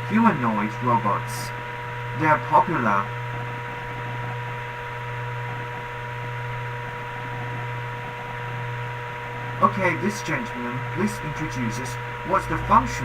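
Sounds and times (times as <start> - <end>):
background hum: 0.0 - 13.0.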